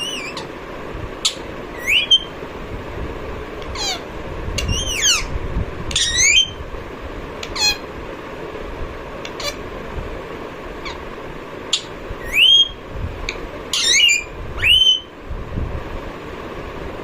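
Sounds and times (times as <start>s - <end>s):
parakeet chirps and squawks: 0.0s - 0.6s, 1.2s - 2.4s, 3.6s - 5.3s, 5.9s - 6.6s, 7.4s - 7.9s, 9.2s - 9.7s, 10.8s - 11.1s, 11.7s - 15.1s.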